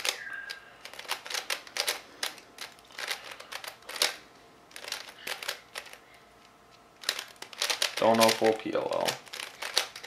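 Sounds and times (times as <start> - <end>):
speed cube layers clicking: 0.0 - 6.0, 7.0 - 10.0.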